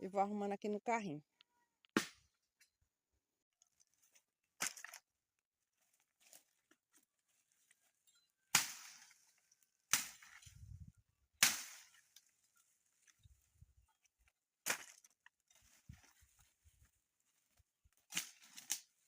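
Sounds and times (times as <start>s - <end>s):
brush hook chopping branches: 2.0s - 2.2s, 8.5s - 9.3s, 9.9s - 10.5s, 11.4s - 12.2s, 14.6s - 15.1s, 18.1s - 19.0s.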